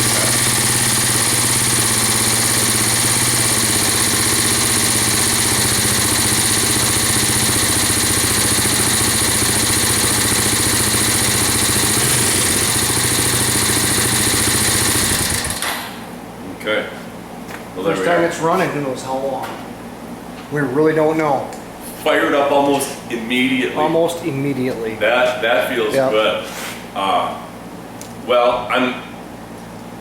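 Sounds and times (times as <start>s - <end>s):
four-stroke engine idling: 0.0s - 15.7s.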